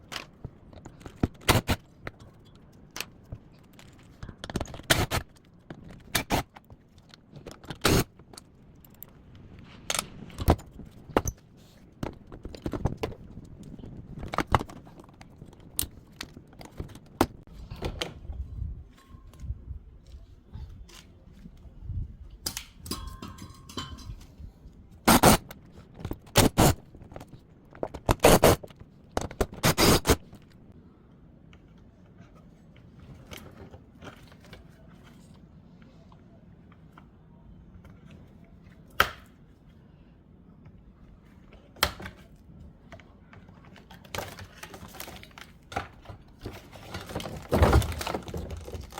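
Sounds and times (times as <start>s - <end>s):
metal and plastic parts clanking: 0.0s - 11.4s, 12.0s - 18.2s, 43.6s - 48.9s.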